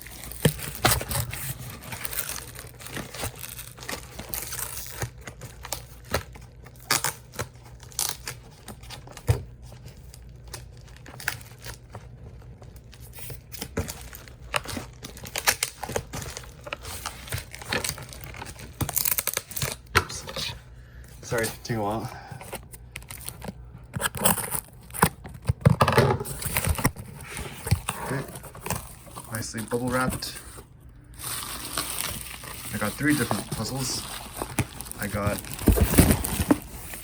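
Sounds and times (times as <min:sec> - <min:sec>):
packing tape peeling and tearing: 0:00.0 - 0:09.2, 0:12.9 - 0:19.9, 0:22.8 - 0:25.7
packaging crinkling: 0:00.0 - 0:20.5, 0:21.2 - 0:37.0.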